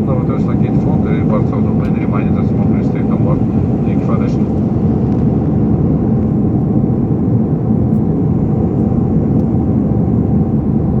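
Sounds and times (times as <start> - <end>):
airliner cabin rumble: 0.0 - 11.0.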